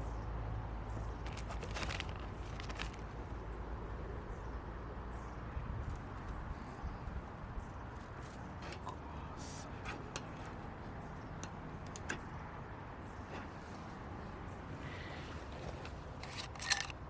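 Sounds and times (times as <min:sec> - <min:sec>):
camp gear clicking and tapping: 0:01.2 - 0:03.4, 0:09.6 - 0:14.2, 0:14.8 - 0:17.0.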